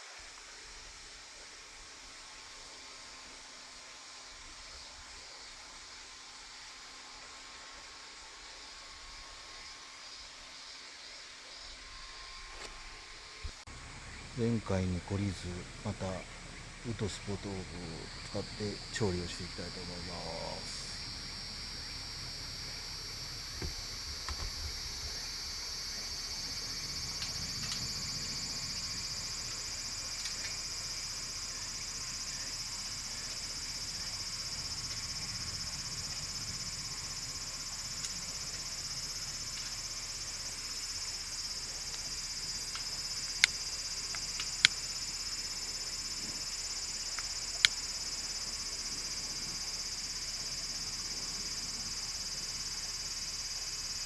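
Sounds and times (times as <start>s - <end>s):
insects droning: 0.0s - 54.0s
sharp clicks: 42.7s - 45.0s, 47.1s - 47.9s.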